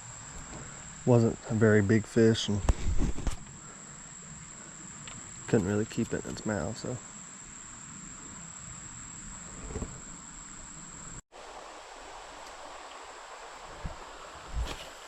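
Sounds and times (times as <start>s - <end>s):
insects chirring: 0.0s - 15.0s
creek flowing: 11.3s - 15.0s.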